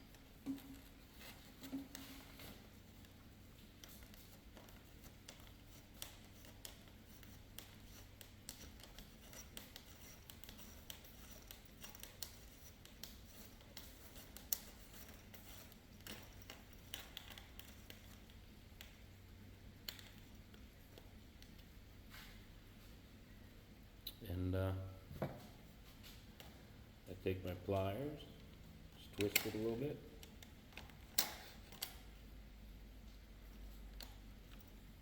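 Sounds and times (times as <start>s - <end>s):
small parts clicking and scraping: 0.0s - 19.1s, 19.8s - 21.7s, 28.4s - 32.2s.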